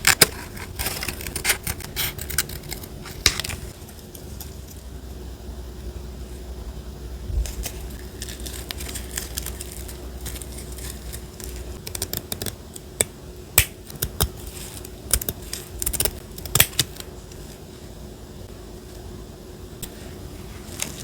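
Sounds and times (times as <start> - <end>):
paper being handled: 7.4 - 11.8, 19.8 - 21.0.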